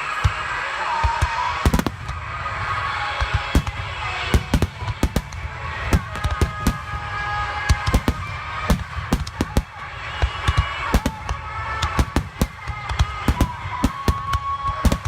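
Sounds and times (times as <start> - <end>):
firework bangs: 0.0 - 15.0
firework crackle: 0.4 - 15.0.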